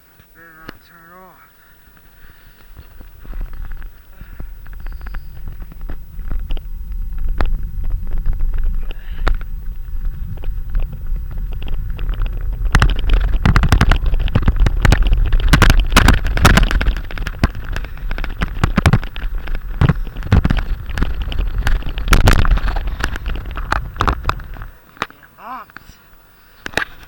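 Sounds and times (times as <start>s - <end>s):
wind buffeting microphone: 1.8s - 24.9s.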